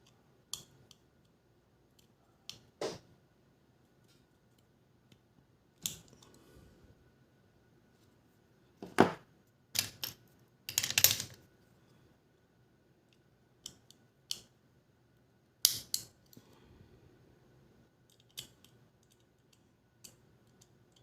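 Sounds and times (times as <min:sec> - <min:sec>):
small parts rattling: 0:09.8 - 0:11.4.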